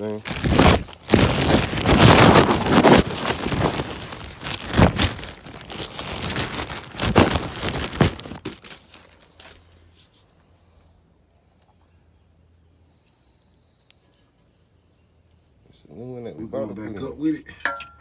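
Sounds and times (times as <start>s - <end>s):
plastic packaging crinkling: 0.0s - 9.8s.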